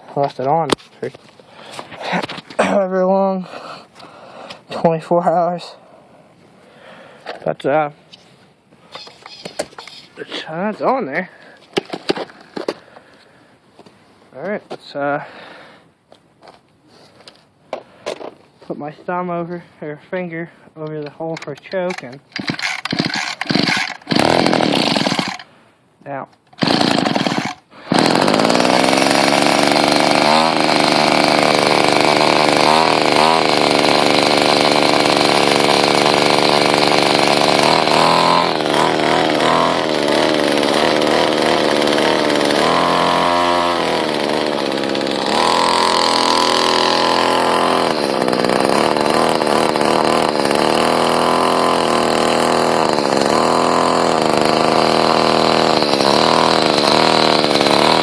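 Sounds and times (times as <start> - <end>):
two-stroke engine revving: 21.9 - 25.4, 26.6 - 58.0.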